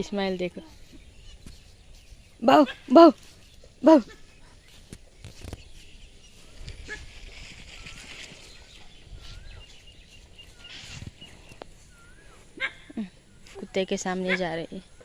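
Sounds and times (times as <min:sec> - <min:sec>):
bird whistled call: 0:11.9 - 0:12.4.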